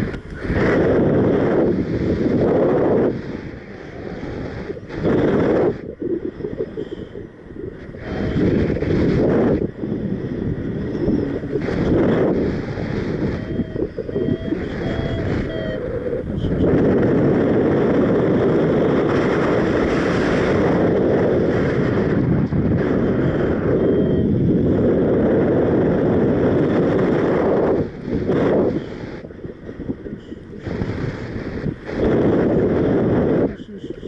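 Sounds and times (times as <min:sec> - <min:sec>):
wind buffeting microphone: 0:00.0 - 0:34.0
variometer beeping: 0:02.3 - 0:19.4, 0:23.1 - 0:25.2.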